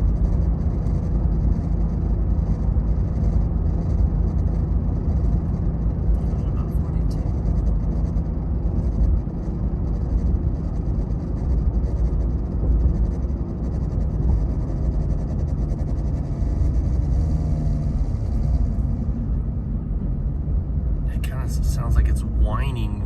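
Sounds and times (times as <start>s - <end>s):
faint gliding whine: 0.0s - 23.0s
pickup truck rumble and drone: 0.0s - 23.0s.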